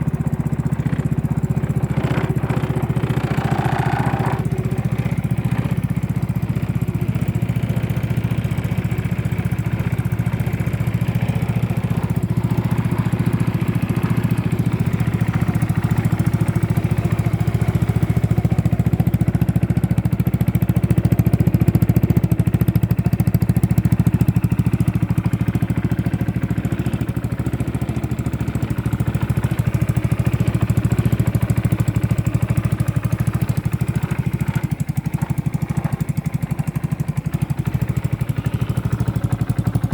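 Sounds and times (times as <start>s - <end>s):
scooter engine running: 0.0s - 39.9s.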